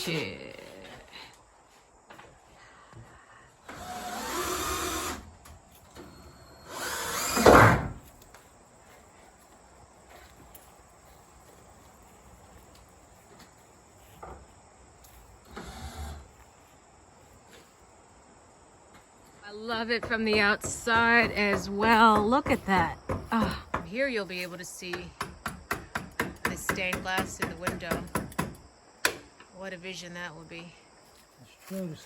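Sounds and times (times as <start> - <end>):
small electric motor running: 3.7 - 5.3, 6.3 - 7.7.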